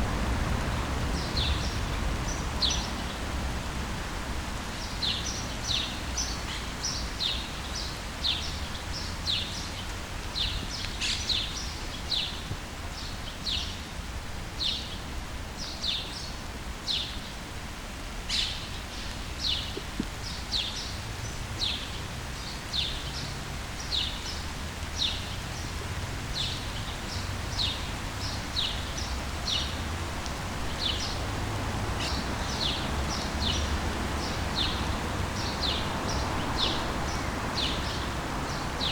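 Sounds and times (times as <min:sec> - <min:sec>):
birds chirping: 0:00.0 - 0:03.8, 0:26.4 - 0:38.9
distant traffic rumble: 0:00.0 - 0:13.3, 0:18.8 - 0:38.9
rain hissing: 0:00.0 - 0:15.6, 0:16.4 - 0:38.9.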